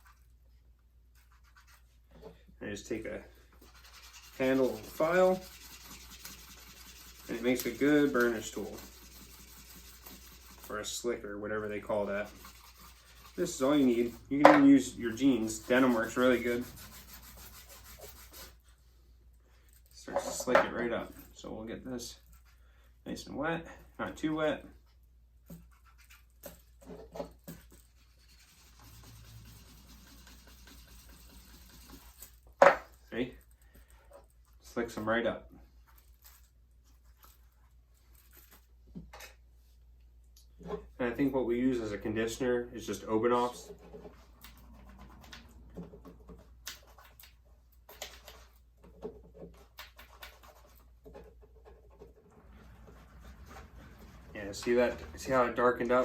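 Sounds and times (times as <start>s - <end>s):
hand rubbing leather: 3.6s - 10.9s, 11.8s - 18.7s
leather rubbing: 12.0s - 18.6s.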